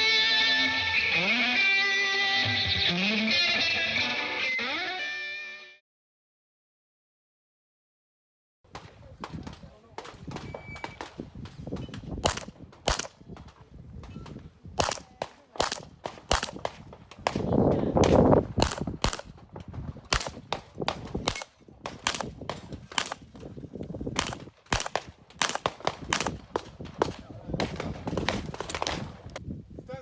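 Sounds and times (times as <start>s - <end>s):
handgun shots in quick pairs: 11.7s - 13.2s, 14.8s - 19.3s, 20.1s - 23.3s, 24.1s - 29.3s.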